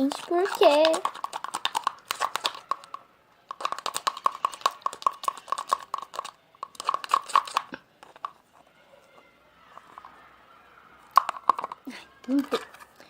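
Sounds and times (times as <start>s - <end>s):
slime being stirred squelching: 0.0s - 8.5s.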